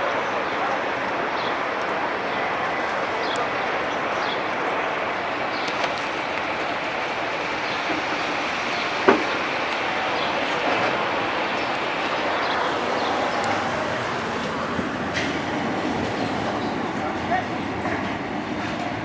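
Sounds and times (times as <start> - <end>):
street traffic noise: 0.0 - 19.0.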